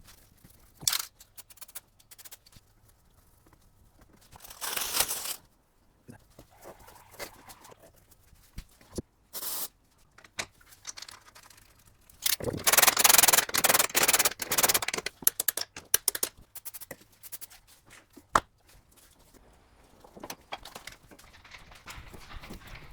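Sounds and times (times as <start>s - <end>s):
scraping and rubbing on metal parts: 4.4s - 5.4s, 6.5s - 8.1s, 9.4s - 18.2s, 19.2s - 22.9s.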